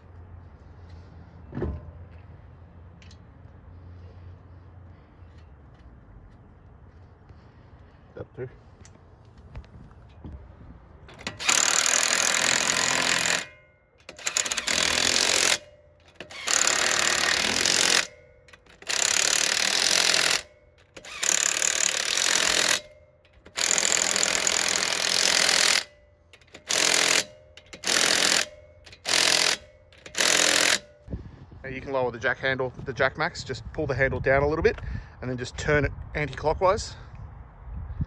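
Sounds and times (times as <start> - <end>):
impact driver hammering: 11.1 - 31.1.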